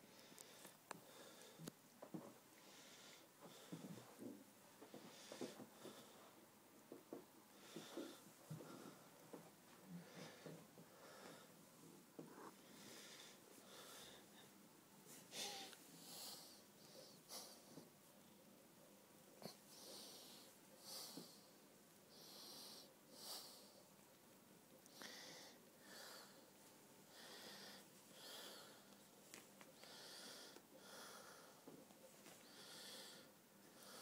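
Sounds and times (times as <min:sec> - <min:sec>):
soft breathing: 0:00.0 - 0:18.6, 0:19.4 - 0:24.2, 0:24.8 - 0:34.0.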